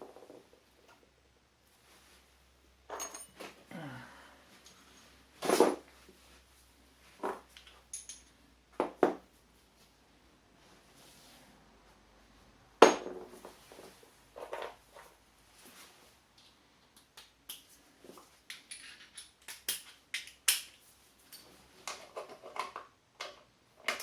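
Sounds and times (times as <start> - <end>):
metal tools clinking and knocking: 2.9 - 3.6, 7.2 - 8.4, 18.4 - 20.4.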